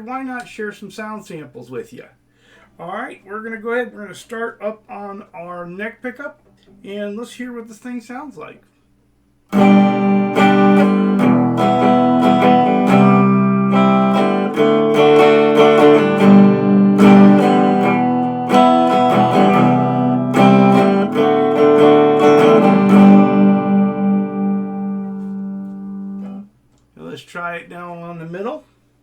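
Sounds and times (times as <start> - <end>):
electric guitar strumming chords: 9.5 - 26.5.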